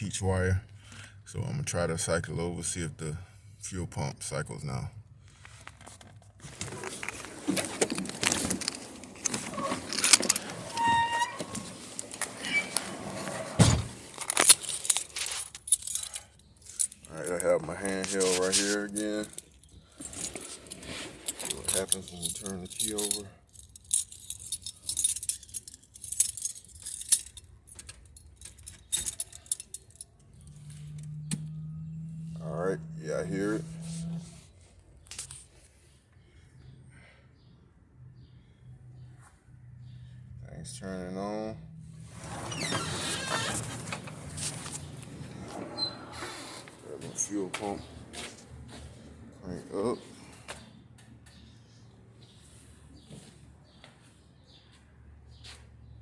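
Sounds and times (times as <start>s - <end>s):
hands handling things: 5.4s - 23.2s
key ring jangling: 14.0s - 17.4s, 21.4s - 31.0s.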